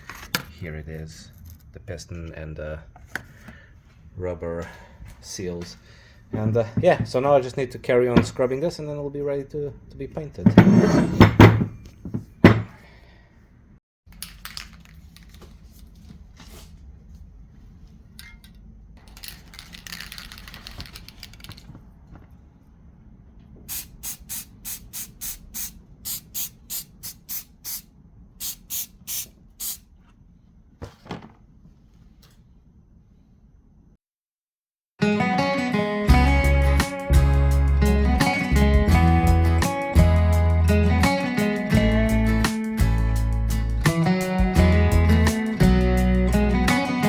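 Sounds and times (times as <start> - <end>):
knocks: 10.5 - 12.8
spray paint hissing: 23.7 - 29.9.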